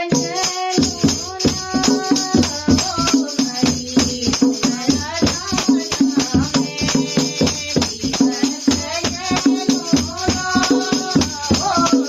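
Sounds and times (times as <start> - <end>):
jingling rattling percussion: 0.0 - 12.0
person singing: 0.0 - 12.0.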